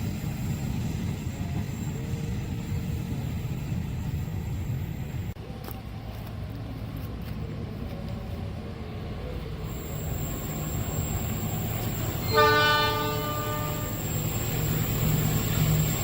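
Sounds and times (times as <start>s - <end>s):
train rumbling: 0.0s - 16.0s
locomotive horn chord: 12.2s - 14.0s.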